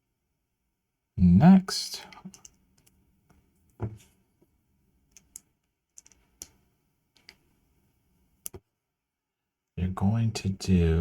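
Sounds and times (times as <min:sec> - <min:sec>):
plastic bricks clicking: 0:05.1 - 0:06.5.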